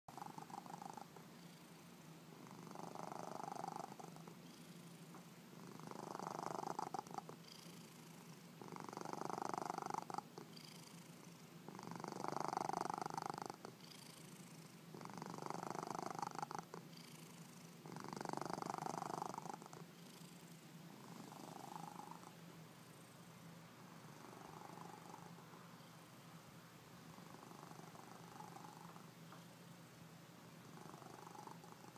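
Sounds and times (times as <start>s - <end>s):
cat snoring: 0.1s - 22.4s, 24.0s - 25.4s, 27.1s - 29.0s, 30.6s - 31.9s.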